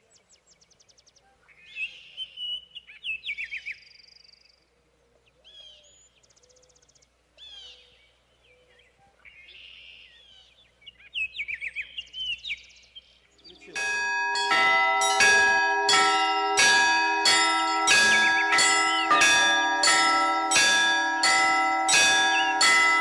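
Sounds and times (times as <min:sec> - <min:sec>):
songbirds singing: 0:00.0 - 0:23.0.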